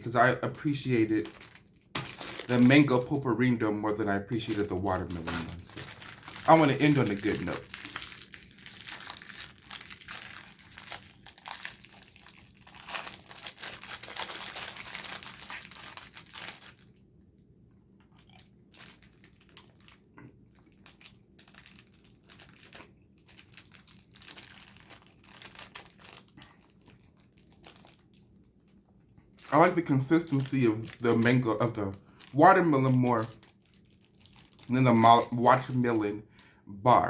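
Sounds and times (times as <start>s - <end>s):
plastic packet crinkling and tearing: 0.0s - 17.0s, 18.0s - 36.5s.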